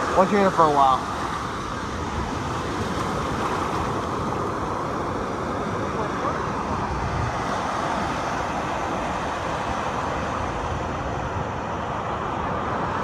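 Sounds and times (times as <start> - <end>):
ocean surf breaking: 0.0 - 13.0.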